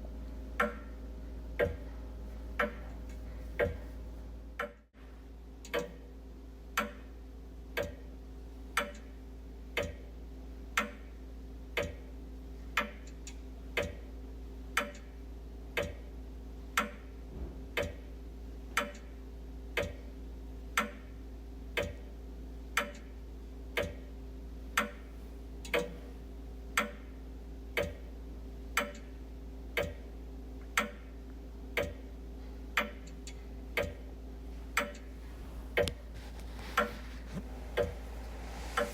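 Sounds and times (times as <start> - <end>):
faint steady hum: 0.0 - 38.9
wall clock ticking: 0.5 - 4.9, 5.6 - 6.1, 6.7 - 38.9.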